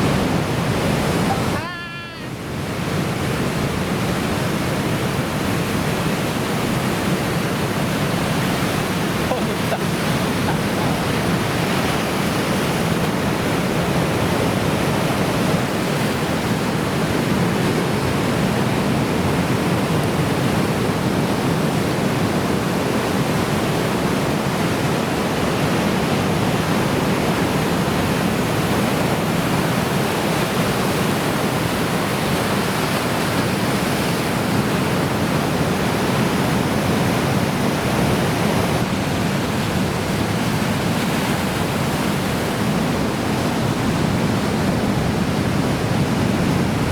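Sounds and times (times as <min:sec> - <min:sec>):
big waves breaking: 0:00.0 - 0:46.9.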